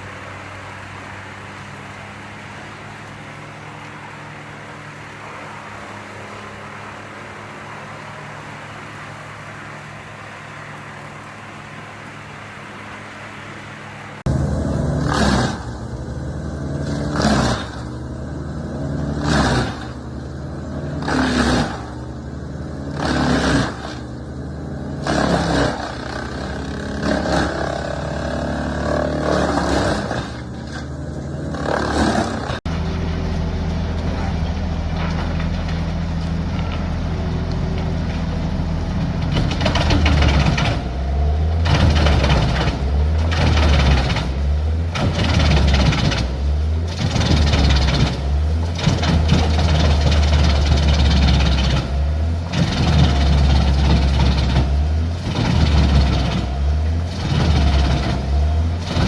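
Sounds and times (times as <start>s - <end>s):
wood chipper engine running: 24.7s - 59.0s
wood crunching in chipper: 25.0s - 59.0s
machine engine running: 32.5s - 59.0s.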